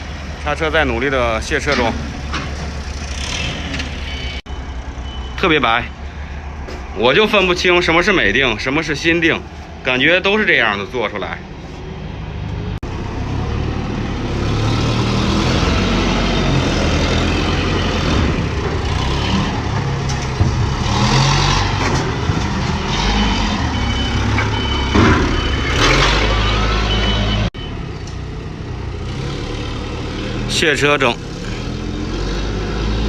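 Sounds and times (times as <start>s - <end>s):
forklift engine revving: 12.4s - 33.0s.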